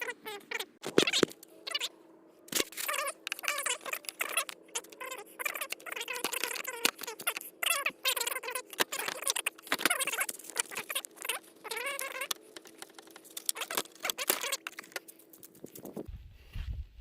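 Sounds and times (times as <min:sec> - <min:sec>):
plastic squeaking: 0:00.0 - 0:01.9, 0:02.5 - 0:16.0
plastic clicks: 0:02.5 - 0:07.5.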